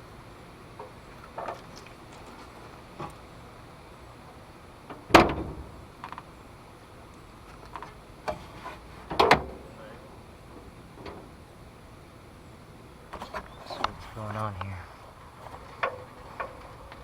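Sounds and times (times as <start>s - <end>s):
loud clunks: 4.9s - 5.8s.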